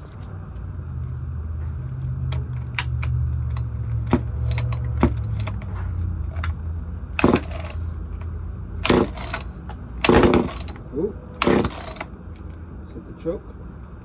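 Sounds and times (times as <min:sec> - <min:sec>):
clicks and knocks handling chainsaw: 0:02.3 - 0:06.6, 0:07.2 - 0:12.6
starter rope pull: 0:02.3 - 0:06.6, 0:07.2 - 0:10.8, 0:11.4 - 0:12.2.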